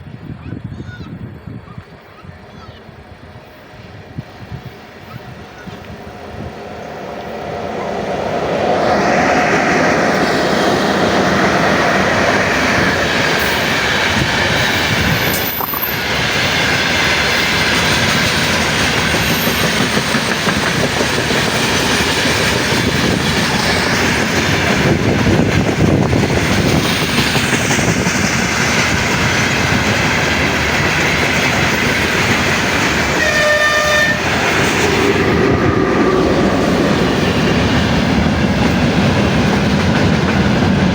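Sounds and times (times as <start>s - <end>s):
train wheels rattling on rails: 0.0s - 40.9s
train horn blast: 33.1s - 36.7s.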